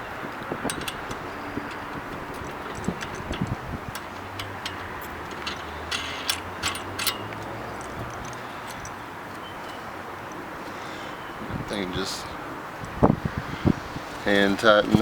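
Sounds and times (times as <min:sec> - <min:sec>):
light metal clicks and clinks: 0:00.4 - 0:10.8.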